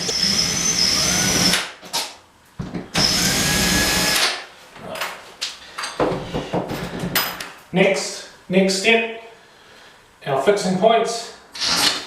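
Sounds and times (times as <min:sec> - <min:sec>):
cordless drill driving a screw: 0:00.0 - 0:01.6, 0:03.0 - 0:04.3.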